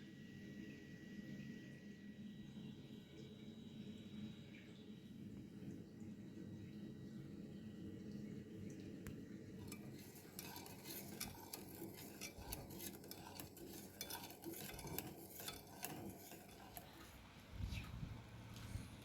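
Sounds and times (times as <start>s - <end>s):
metal utensil clinking in a bowl: 9.6s - 17.1s.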